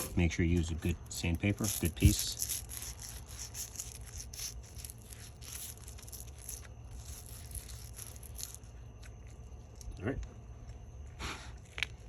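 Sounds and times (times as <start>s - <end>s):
steady low hum: 0.0s - 12.0s
sandpaper rasping on metal: 1.4s - 8.2s.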